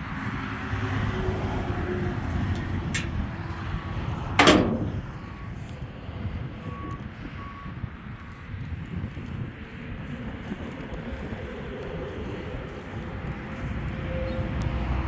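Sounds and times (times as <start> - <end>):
pickup truck engine rumbling: 1.4 - 5.6
door shutting bang: 3.0 - 3.3, 4.4 - 5.1.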